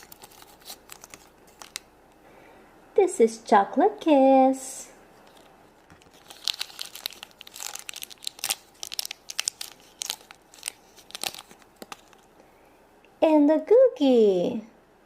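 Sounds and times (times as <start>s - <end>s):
plastic wrapper crinkling: 0.0s - 1.9s, 5.2s - 12.4s.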